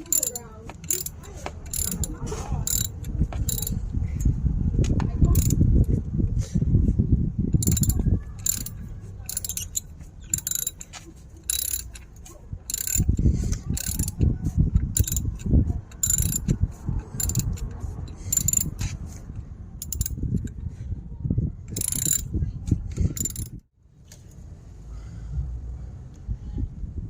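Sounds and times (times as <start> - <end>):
sharp clicks: 0.0 - 3.8, 5.3 - 5.6, 7.6 - 18.9.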